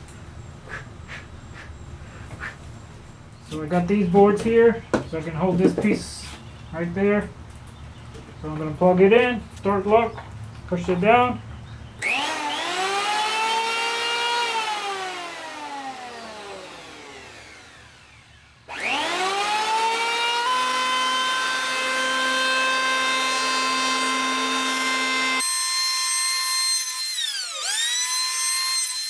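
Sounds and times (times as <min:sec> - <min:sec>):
electric hand planer whining: 0:12.0 - 0:29.0.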